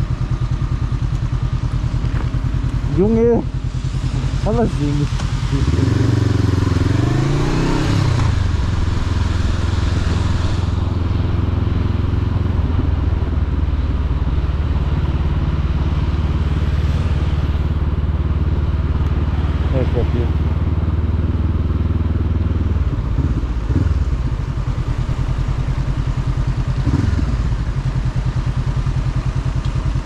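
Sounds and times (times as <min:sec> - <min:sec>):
rushing hiss: 0:03.5 - 0:06.1
motorcycle engine pulling hard: 0:26.6 - 0:27.9.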